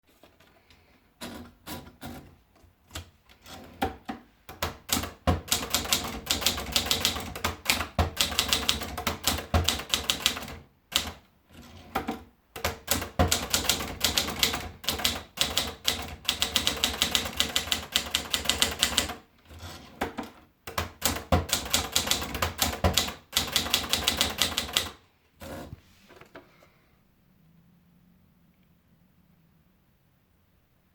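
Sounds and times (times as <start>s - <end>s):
manual typewriter typing: 4.5s - 11.2s, 11.8s - 25.7s.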